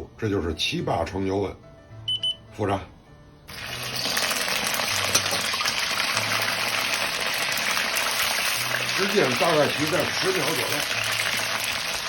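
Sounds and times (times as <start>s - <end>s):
deep-frying oil sizzling: 3.5s - 12.0s.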